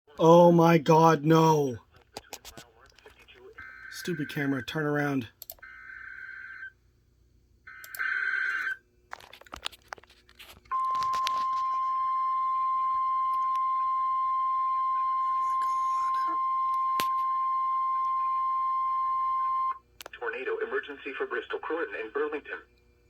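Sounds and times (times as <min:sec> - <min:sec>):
steady alarm tone: 0:03.6 - 0:06.7, 0:10.7 - 0:19.8
clicks: 0:05.4 - 0:05.7.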